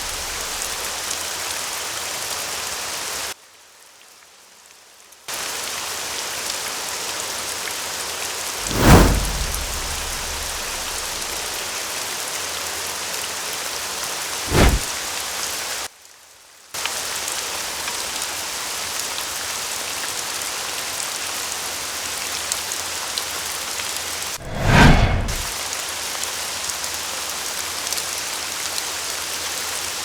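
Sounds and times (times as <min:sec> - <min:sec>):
rain hiss: 0:00.0 - 0:01.4, 0:08.6 - 0:11.6
low boom: 0:08.6 - 0:11.4, 0:24.4 - 0:25.5.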